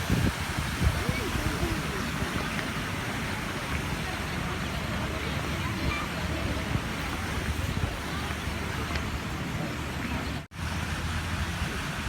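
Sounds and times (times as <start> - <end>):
strong wind on microphone: 0.0 - 4.5, 5.4 - 8.7.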